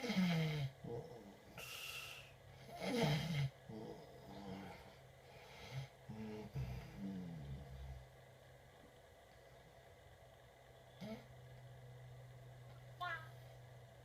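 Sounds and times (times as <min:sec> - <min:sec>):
man snoring: 0:00.0 - 0:08.0, 0:11.0 - 0:11.3.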